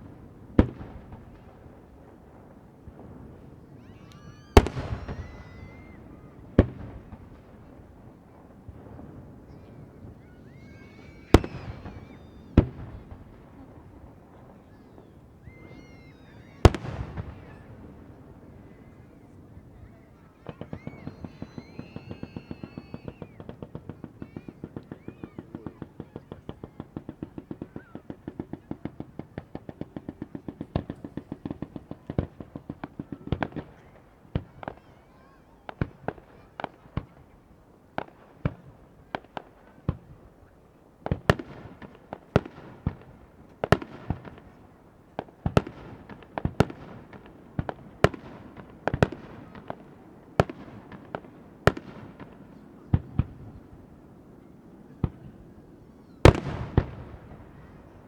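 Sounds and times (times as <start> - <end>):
rapid firework bursts: 0.0 - 18.3, 20.2 - 37.3.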